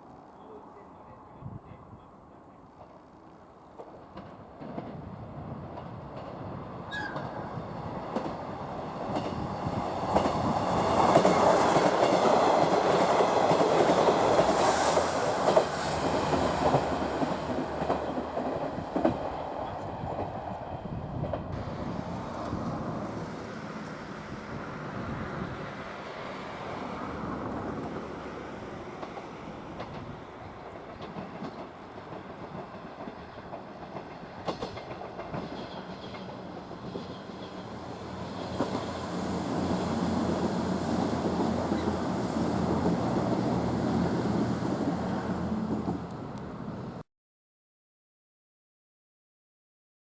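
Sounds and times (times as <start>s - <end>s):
train wheels clattering over rail joints: 3.7s - 19.4s, 28.9s - 39.0s.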